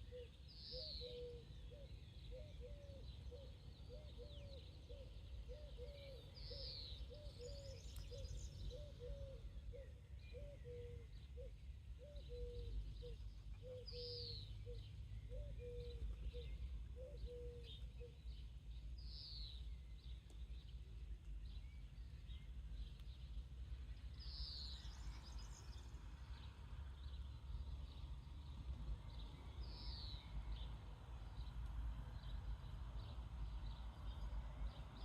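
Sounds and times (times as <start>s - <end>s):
small birds chirping: 0.0s - 35.0s
soft low coo: 8.7s - 18.2s.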